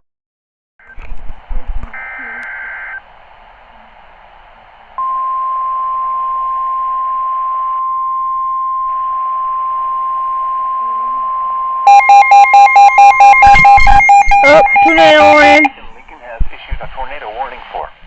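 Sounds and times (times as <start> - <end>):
faint radio hiss: 0.8 - 18.0
loud steady alert beep: 5.0 - 15.7
rapid pulsing beep: 5.0 - 15.7.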